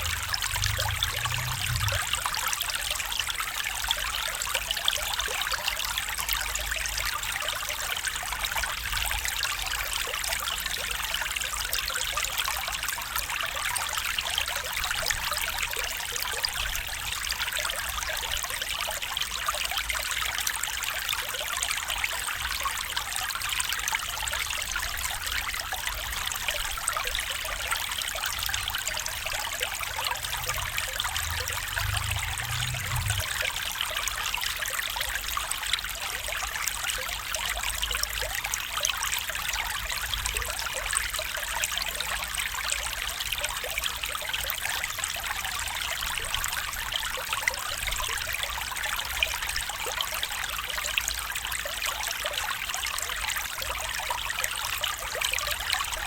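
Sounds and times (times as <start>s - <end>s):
faint low rumble: 0.0s - 2.7s, 27.3s - 34.6s
stream water flowing and trickling: 0.0s - 56.0s.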